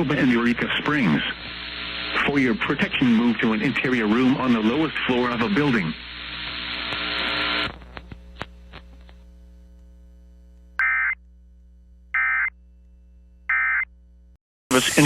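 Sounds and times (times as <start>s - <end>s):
radio receiver hiss: 0.0s - 11.4s, 14.7s - 15.0s
steady electrical hum: 0.0s - 14.4s.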